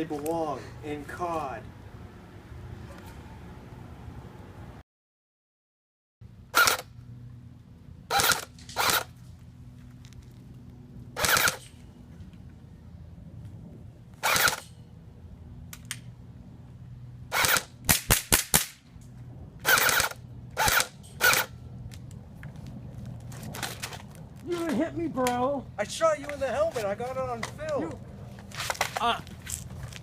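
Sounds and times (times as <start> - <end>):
low steady hum: 6.2 - 30.0.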